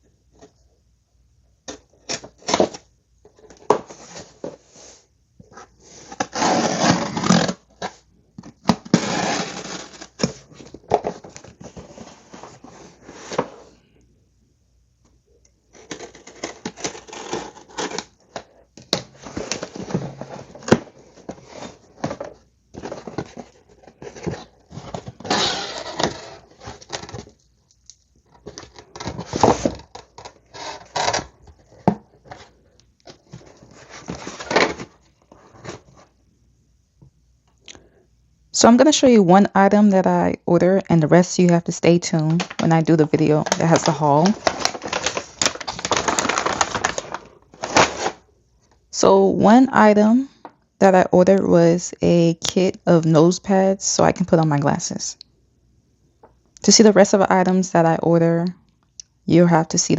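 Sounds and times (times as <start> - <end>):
packaging tearing and crinkling: 6.0 - 8.0, 8.6 - 12.0, 15.7 - 27.4, 28.3 - 35.8, 43.4 - 48.3.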